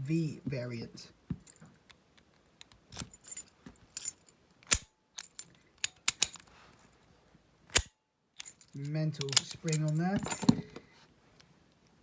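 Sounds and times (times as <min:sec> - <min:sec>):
padlock clicking and clinking: 0:02.6 - 0:06.5, 0:07.7 - 0:10.5.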